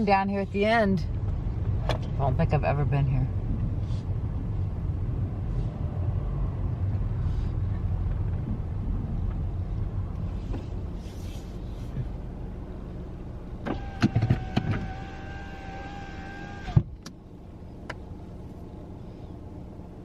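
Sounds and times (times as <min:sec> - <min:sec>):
car cabin rumble: 0:00.0 - 0:20.0
power window motor whine: 0:13.6 - 0:17.2.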